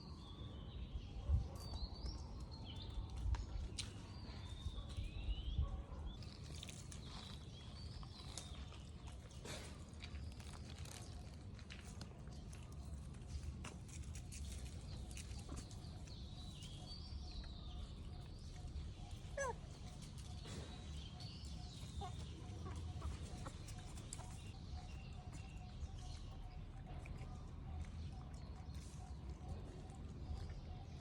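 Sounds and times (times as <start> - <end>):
faint animal calls and chirps: 14.1 - 31.0.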